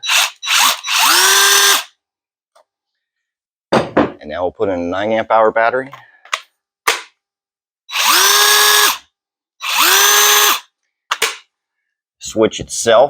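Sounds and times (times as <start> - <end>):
cordless impact wrench whining: 0.0 - 1.9, 7.9 - 11.4.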